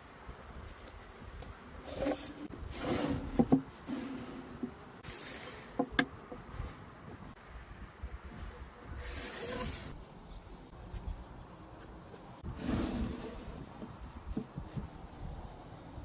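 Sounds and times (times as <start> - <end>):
wood scraping strokes: 1.8 - 7.3, 8.3 - 10.1, 11.8 - 15.0.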